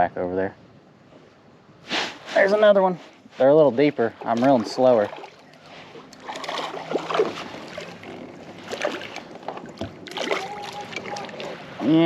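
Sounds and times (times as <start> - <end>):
water splashing: 3.8 - 12.0.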